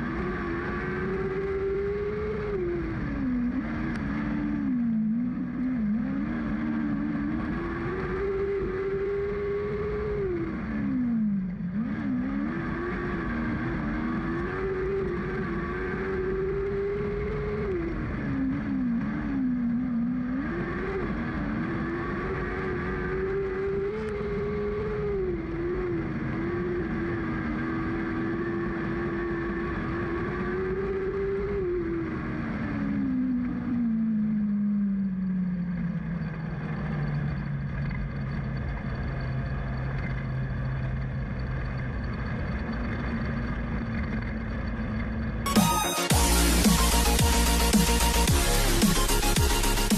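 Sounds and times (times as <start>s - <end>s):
race car engine revving: 0.0s - 33.8s, 45.5s - 49.9s.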